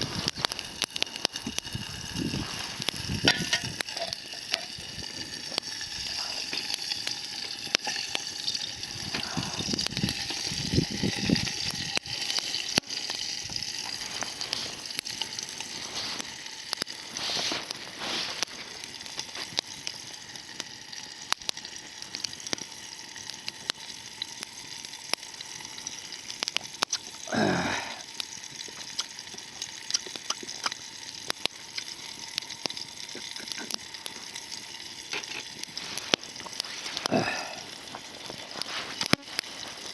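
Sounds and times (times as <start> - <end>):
fire popping and crackling: 0.0 - 39.9
meat sizzling over fire: 0.0 - 39.9.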